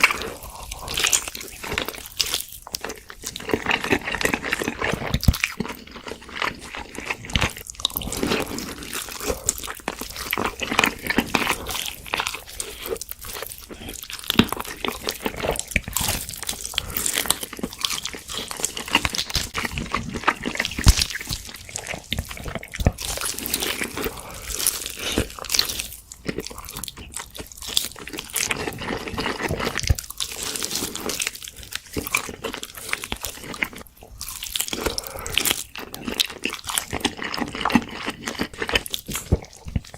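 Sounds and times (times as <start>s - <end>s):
crunchy eating and chewing: 0.0s - 39.9s.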